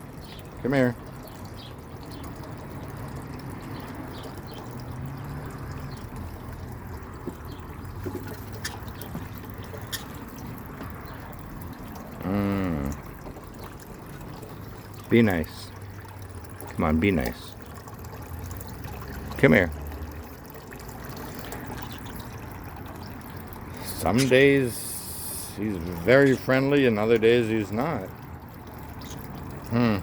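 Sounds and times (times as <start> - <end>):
water trickling: 0.0 - 30.0
short wordless voice: 0.6 - 1.0, 12.2 - 13.1, 23.8 - 28.1, 29.7 - 30.0.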